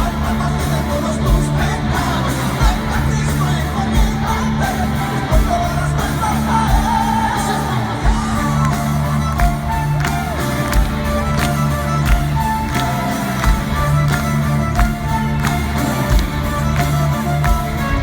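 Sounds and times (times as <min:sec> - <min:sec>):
metal band playing live: 0:00.0 - 0:18.0
crowd whoops and shouts: 0:06.2 - 0:18.0.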